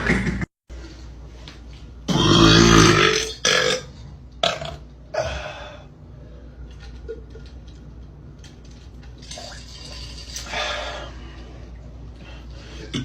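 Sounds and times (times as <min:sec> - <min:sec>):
man burping: 0:02.1 - 0:05.4.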